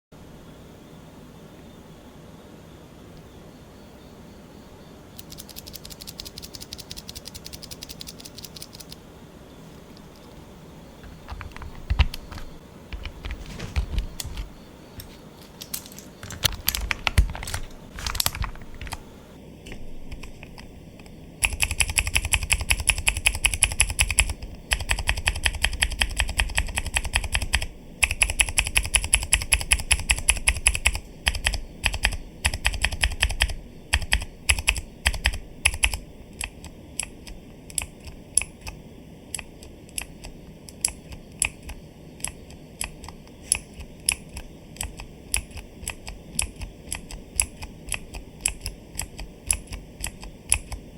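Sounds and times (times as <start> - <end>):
mechanical keyboard typing: 5.2 - 9.0, 11.0 - 14.5, 15.6 - 19.0, 21.4 - 50.9.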